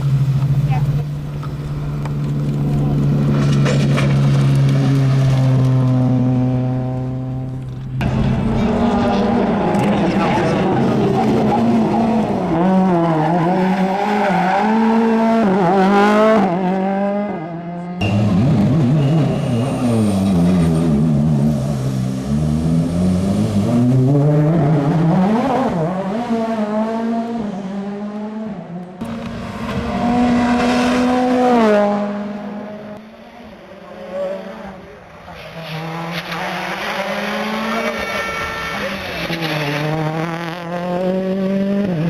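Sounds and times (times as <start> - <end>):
rally car engine revving: 0.0 - 42.0.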